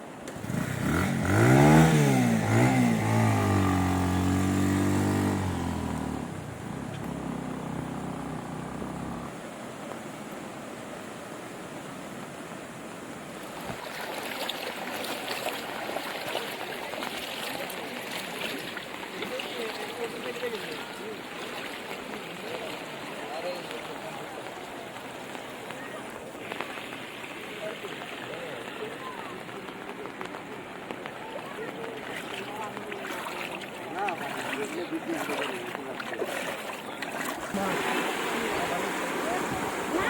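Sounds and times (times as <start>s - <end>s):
small engine revving: 0.3s - 9.3s.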